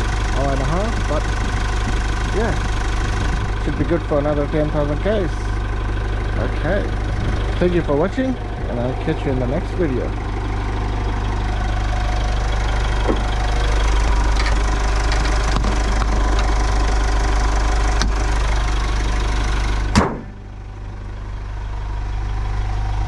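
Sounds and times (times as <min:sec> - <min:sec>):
diesel engine idling: 0:00.0 - 0:23.0
sharp thump: 0:19.9 - 0:20.4.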